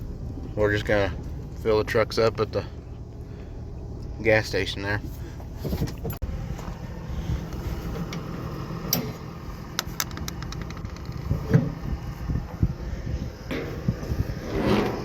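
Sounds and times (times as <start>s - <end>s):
vehicle engine rumbling: 0.0s - 15.0s
sharp clicks: 9.8s - 11.3s.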